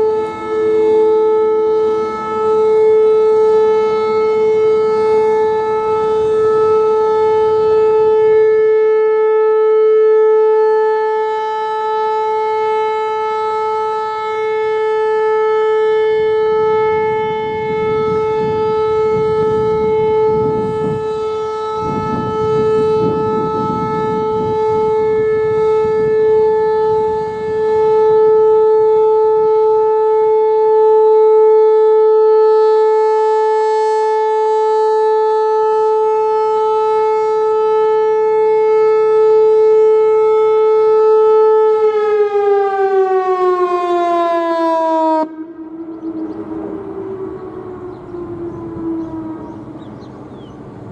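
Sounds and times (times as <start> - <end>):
storm siren steady tone: 0.0 - 50.9.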